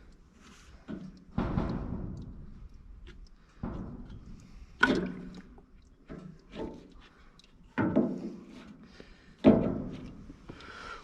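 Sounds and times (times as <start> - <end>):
metal clunks and knocks: 0.8 - 6.9, 7.7 - 8.8, 9.4 - 10.3.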